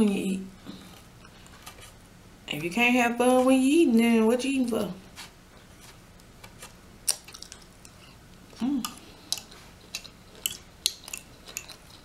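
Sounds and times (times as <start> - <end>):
wet mouth clicks and smacks chewing: 7.0 - 8.1, 9.2 - 12.0.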